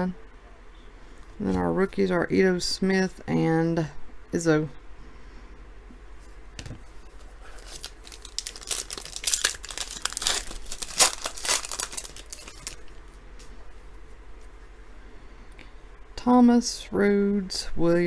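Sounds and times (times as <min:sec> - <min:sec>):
plastic wrapper crinkling: 0:07.0 - 0:13.1
sharp crackles: 0:07.5 - 0:12.9.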